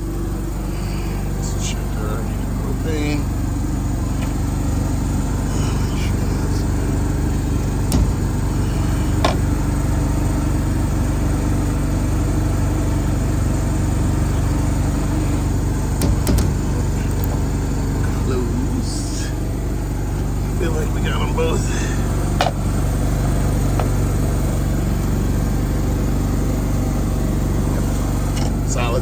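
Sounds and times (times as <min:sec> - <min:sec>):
engine droning: 0:00.0 - 0:29.0
sharp clicks and knocks: 0:07.3 - 0:09.6, 0:15.8 - 0:17.6, 0:22.4 - 0:22.6, 0:23.6 - 0:24.0.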